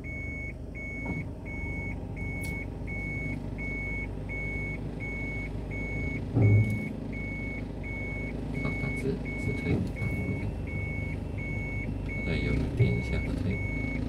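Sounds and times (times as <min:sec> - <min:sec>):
car engine idling: 0:00.0 - 0:14.0
reverse warning beeper: 0:00.0 - 0:14.0
low thump: 0:06.3 - 0:06.9.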